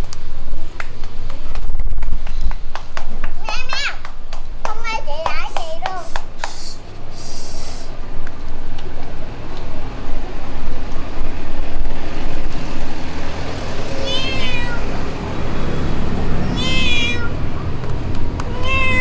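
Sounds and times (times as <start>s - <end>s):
cat meowing: 13.9s - 15.0s, 16.4s - 17.4s, 18.5s - 19.0s.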